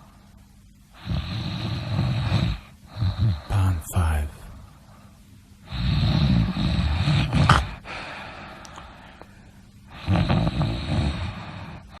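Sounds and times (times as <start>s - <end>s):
person snoring: 1.0s - 4.6s, 9.9s - 12.0s.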